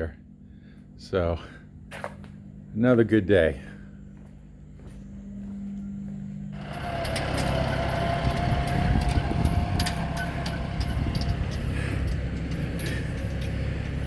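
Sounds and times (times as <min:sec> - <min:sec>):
engine running with whine: 0:03.9 - 0:14.0
clicks and rattles: 0:06.6 - 0:14.0.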